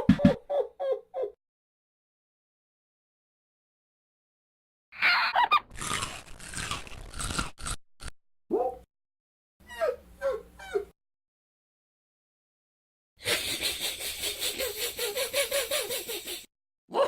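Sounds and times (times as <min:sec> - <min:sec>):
dog whining yelps: 0:00.2 - 0:01.4, 0:09.6 - 0:10.9
crunching rustling noise: 0:05.7 - 0:07.8.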